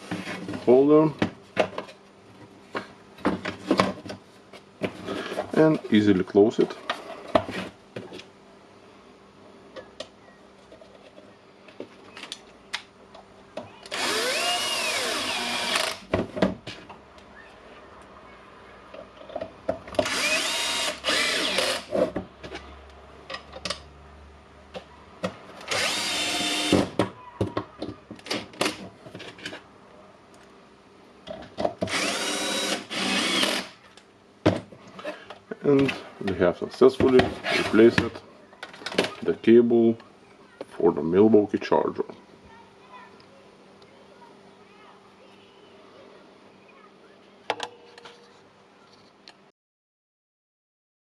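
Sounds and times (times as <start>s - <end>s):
cordless drill motor whining: 13.9s - 16.0s, 20.0s - 21.9s, 25.7s - 26.9s, 31.9s - 33.8s.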